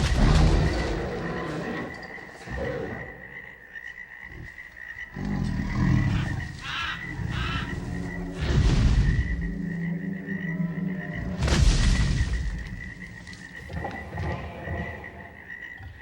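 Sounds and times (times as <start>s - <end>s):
booming giant footsteps: 0.0s - 1.5s, 11.3s - 15.0s
frogs croaking: 0.0s - 16.0s.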